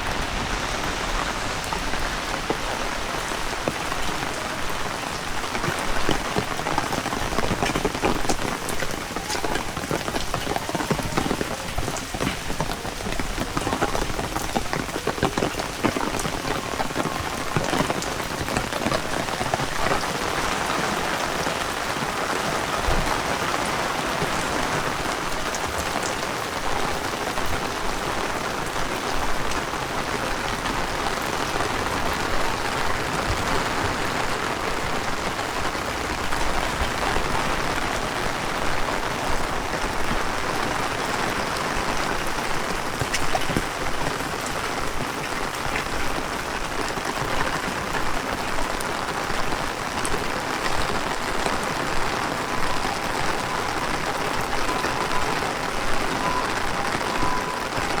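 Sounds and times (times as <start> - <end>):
heavy rain falling: 0.0 - 58.0.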